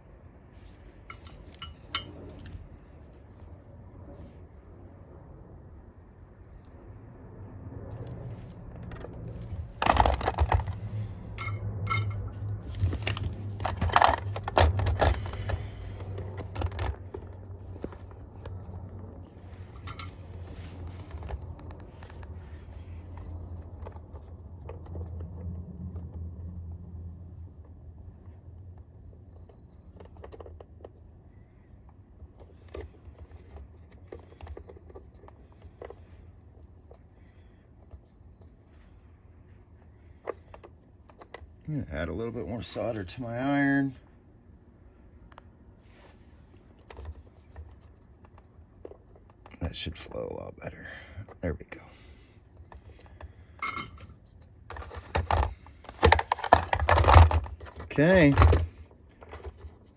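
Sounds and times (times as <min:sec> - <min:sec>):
low steady hum: 0:00.0 - 0:59.9
tools clicking and tapping: 0:01.0 - 0:02.6, 0:09.8 - 0:12.3, 0:19.7 - 0:20.2.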